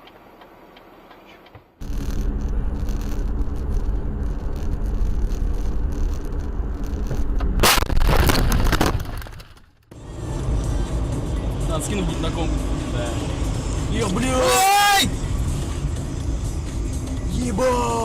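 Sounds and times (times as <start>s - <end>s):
road noise: 0.0s - 18.0s
car engine running: 1.8s - 7.7s, 9.9s - 18.0s.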